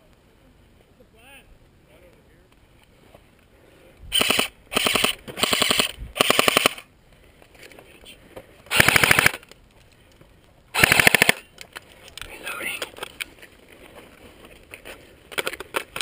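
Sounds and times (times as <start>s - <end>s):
airsoft rifle firing bursts: 4.2s - 6.9s, 8.7s - 9.4s, 10.7s - 11.5s.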